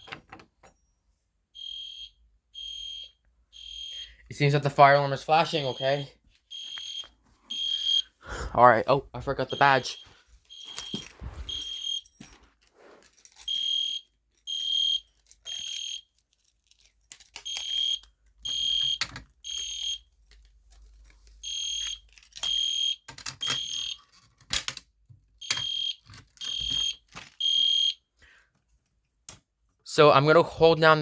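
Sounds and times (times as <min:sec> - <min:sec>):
fire alarm horn beeping: 0:01.6 - 0:12.0, 0:13.5 - 0:16.1, 0:17.5 - 0:20.1, 0:21.4 - 0:24.0, 0:25.4 - 0:28.0.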